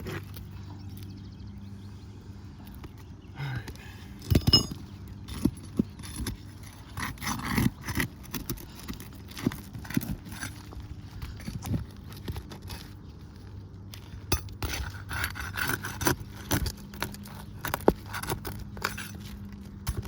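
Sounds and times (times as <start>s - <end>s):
metal pry tool scraping shingles: 4.2s - 13.0s, 14.3s - 20.0s
shingles tearing: 5.8s - 13.0s.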